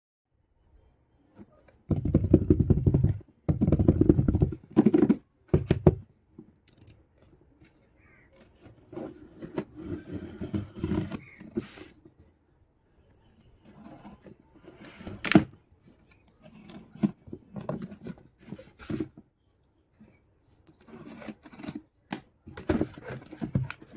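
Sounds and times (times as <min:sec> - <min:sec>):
packaging rustling and scraping: 0:07.6 - 0:12.1, 0:13.7 - 0:19.3, 0:20.1 - 0:23.9.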